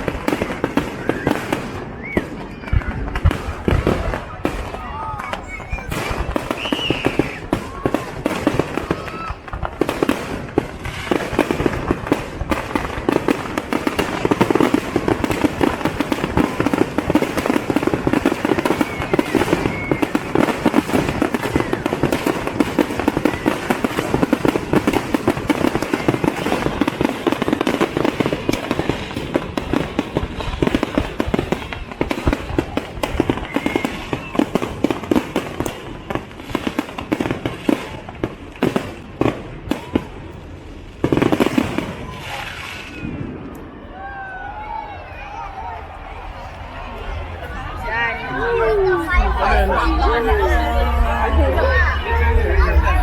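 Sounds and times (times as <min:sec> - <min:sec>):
fireworks bursting: 0:00.0 - 0:44.3, 0:45.4 - 0:53.0.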